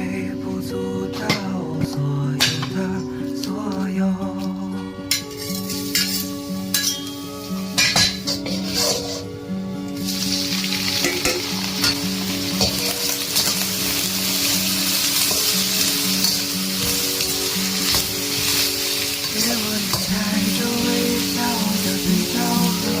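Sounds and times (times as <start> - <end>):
background music: 0.0 - 23.0
food sizzling in a pan: 5.1 - 23.0.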